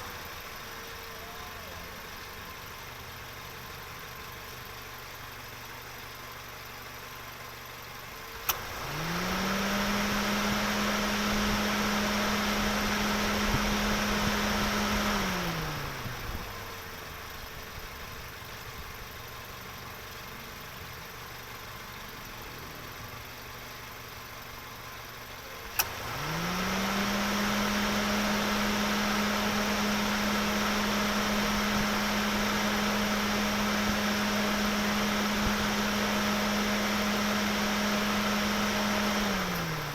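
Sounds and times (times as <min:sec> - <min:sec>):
car engine idling and revving: 0:00.0 - 0:39.9
click: 0:08.4 - 0:08.6, 0:25.7 - 0:26.0.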